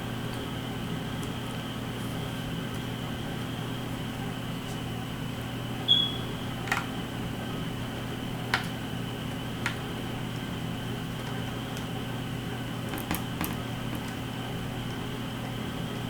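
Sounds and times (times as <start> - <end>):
room hum: 0.0 - 16.0
short high beep: 5.9 - 6.3.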